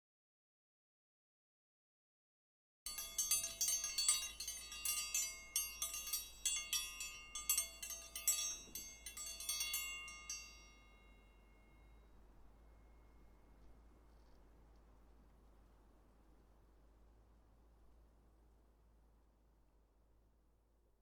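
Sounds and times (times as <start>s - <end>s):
metal chimes ringing: 2.9s - 13.8s.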